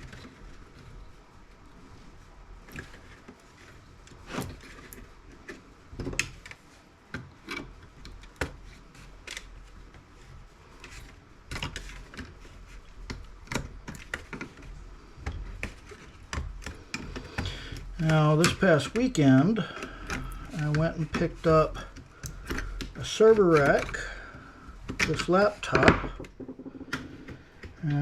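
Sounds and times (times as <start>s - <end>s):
laptop parts clicking and knocking: 24.8s - 27.8s.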